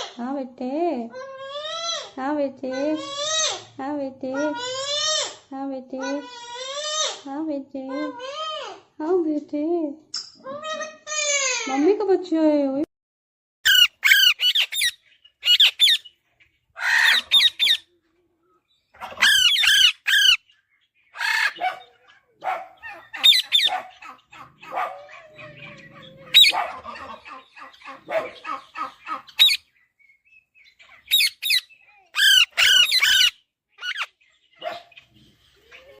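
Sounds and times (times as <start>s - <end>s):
parakeet chick squawking: 2.8s - 3.7s, 4.4s - 5.4s, 13.6s - 16.2s, 16.8s - 17.9s, 19.0s - 29.8s, 30.6s - 36.0s
rapid chattering bird calls: 13.7s - 17.9s, 18.7s - 36.0s.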